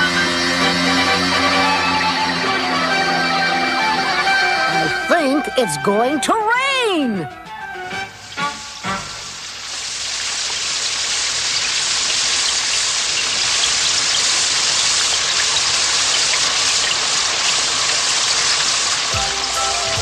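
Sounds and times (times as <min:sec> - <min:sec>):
music: 0:00.0 - 0:09.6, 0:19.1 - 0:20.0.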